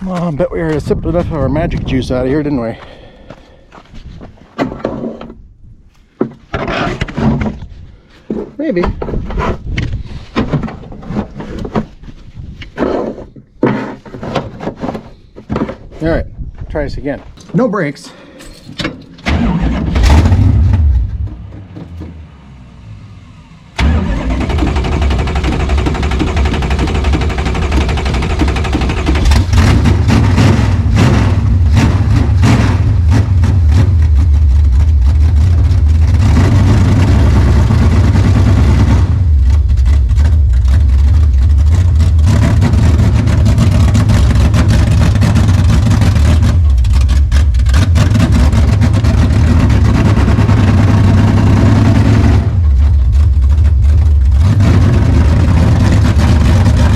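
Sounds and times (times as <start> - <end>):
car engine revving unevenly: 20.0 - 56.9.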